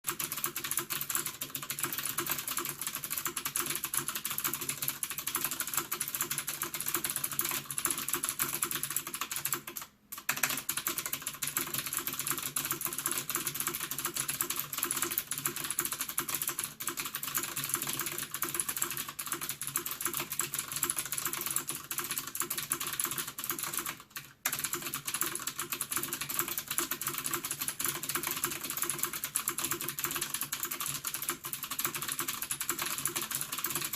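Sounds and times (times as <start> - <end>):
fast mechanical keyboard typing: 0.1 - 33.9.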